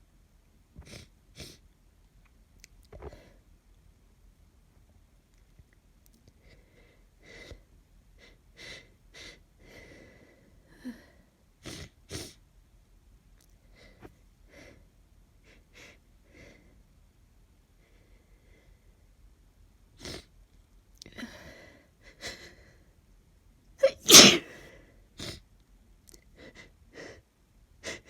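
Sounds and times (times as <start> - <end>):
woman sneezing: 23.8 - 24.5
woman sniffling: 23.8 - 24.7.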